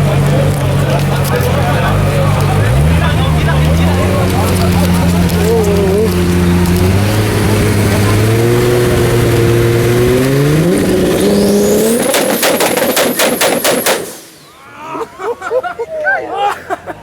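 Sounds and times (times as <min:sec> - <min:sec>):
car engine accelerating hard: 0:00.0 - 0:14.5
loud exhaust bangs: 0:00.0 - 0:14.6
high turbo whistle: 0:10.6 - 0:14.6.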